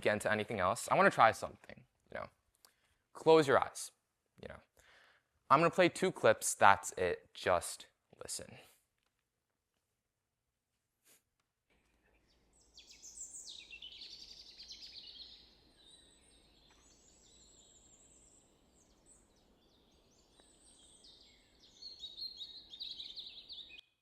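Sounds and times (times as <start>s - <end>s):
birds chirping and trilling: 11.8s - 24.0s.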